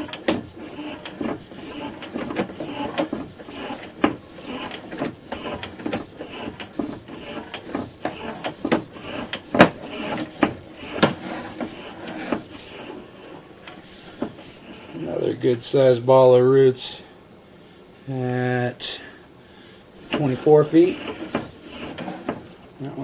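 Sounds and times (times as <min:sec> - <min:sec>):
cable clicking and rubbing in pipe: 0:00.0 - 0:14.9, 0:20.0 - 0:23.0.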